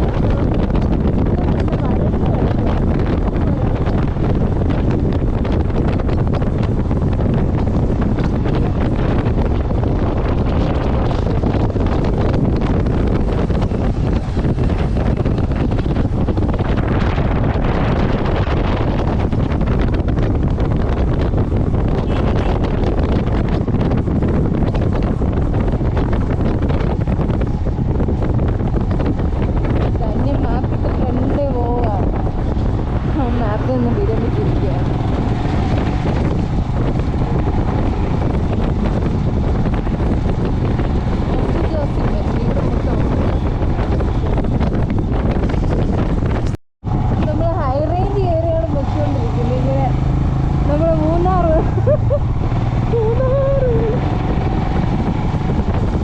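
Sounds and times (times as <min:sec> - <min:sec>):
wind buffeting microphone: 0:00.0 - 0:56.0.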